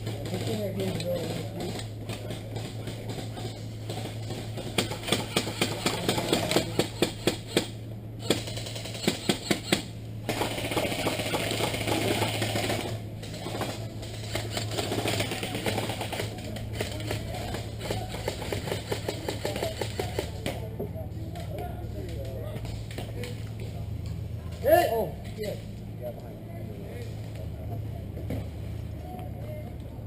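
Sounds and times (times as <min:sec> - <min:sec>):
airsoft guns firing: 0:00.0 - 0:20.6.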